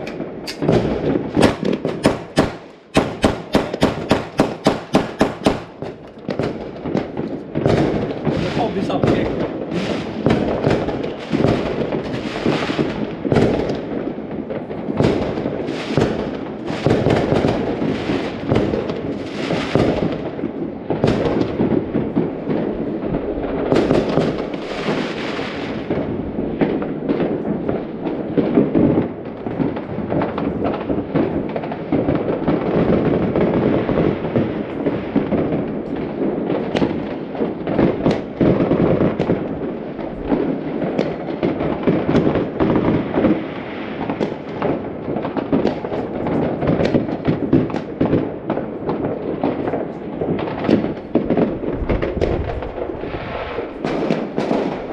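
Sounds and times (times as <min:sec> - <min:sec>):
fireworks crackling and banging: 0:00.0 - 0:54.9.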